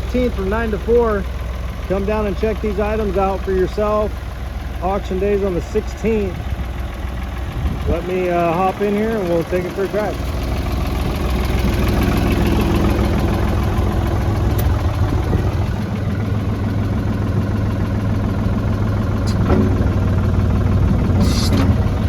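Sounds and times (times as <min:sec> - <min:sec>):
tractor engine idling: 0:00.0 - 0:22.0
short rattle: 0:10.2 - 0:15.8, 0:19.1 - 0:22.0.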